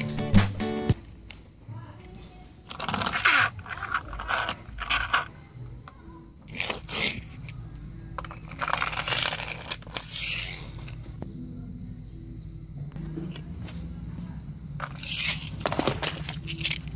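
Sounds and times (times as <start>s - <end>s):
crunching rattling handling noise: 8.2s - 11.0s, 14.8s - 16.9s.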